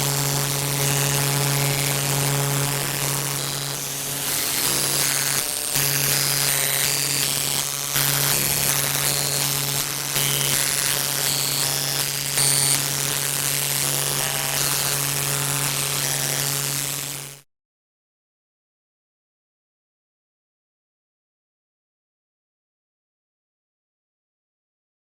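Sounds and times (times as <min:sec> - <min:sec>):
steady low electronic buzz: 0:03.4 - 0:06.2.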